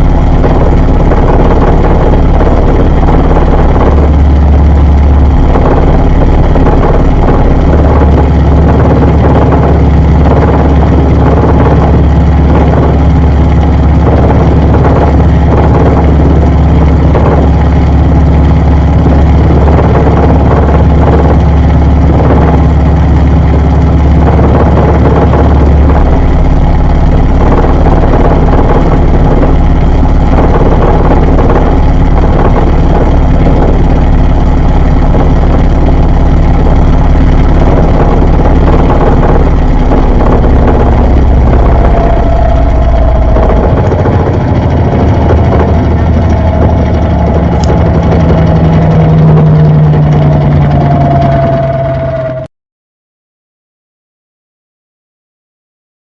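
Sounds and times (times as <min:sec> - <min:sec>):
washing machine running: 0:00.0 - 0:52.5.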